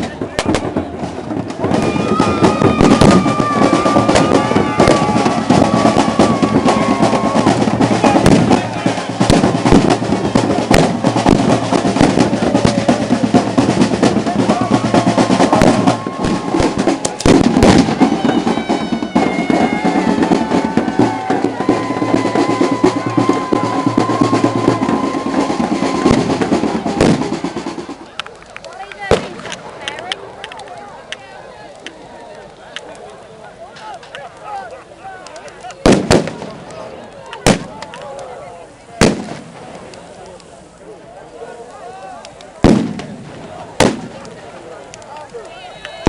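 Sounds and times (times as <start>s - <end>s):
drums beating rapidly: 0.0s - 28.0s
firecracker bangs: 0.0s - 28.0s, 29.0s - 29.8s, 35.8s - 36.8s, 37.4s - 38.0s, 39.0s - 39.9s, 42.6s - 44.4s
crowd voices: 0.0s - 46.0s
long held high notes: 17.8s - 27.9s.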